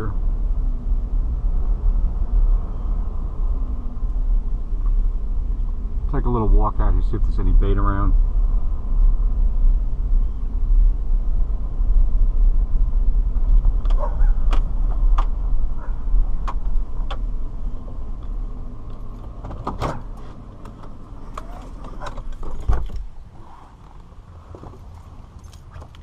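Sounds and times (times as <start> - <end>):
car engine rumble: 0.0 - 26.0
sharp clicks and knocks: 13.5 - 15.4, 16.4 - 17.3.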